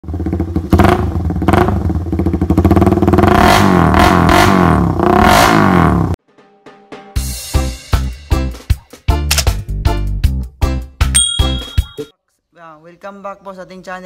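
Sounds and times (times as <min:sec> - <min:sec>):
motorcycle engine revving loud: 0:00.0 - 0:06.2.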